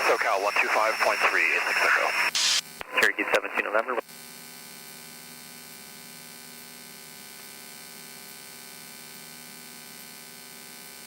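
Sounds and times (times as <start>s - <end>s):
airplane engine and cabin drone: 0.0s - 3.9s.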